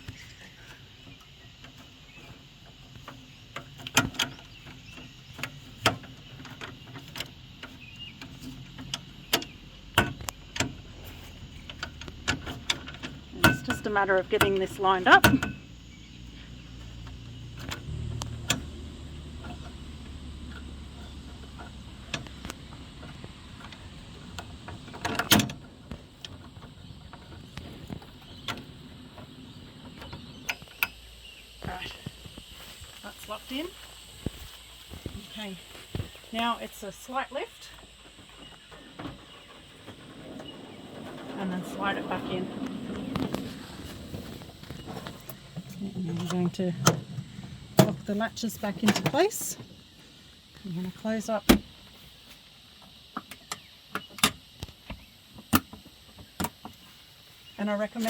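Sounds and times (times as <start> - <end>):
fittings clicking and knocking: 2.8 - 15.8
metal clicks and knocks: 16.8 - 31.0.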